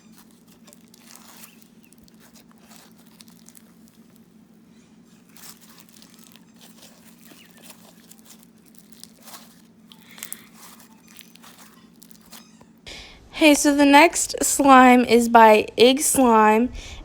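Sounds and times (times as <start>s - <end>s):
foam beads crackling and popping: 0.0s - 12.7s
slime being squished by hand: 0.0s - 12.7s.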